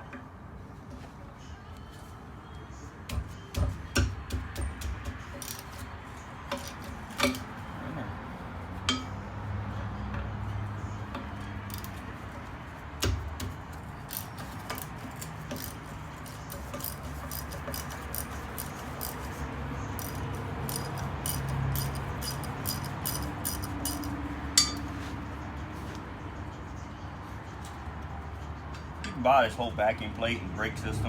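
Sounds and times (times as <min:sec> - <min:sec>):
metal clicks of hand tools: 0:04.8 - 0:05.9, 0:06.5 - 0:07.5, 0:11.1 - 0:12.0, 0:13.0 - 0:19.3, 0:20.0 - 0:24.9.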